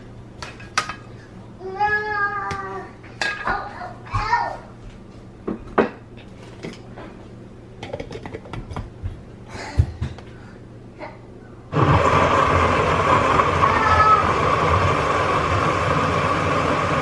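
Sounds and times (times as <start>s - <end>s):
blender motor running: 11.7s - 17.0s.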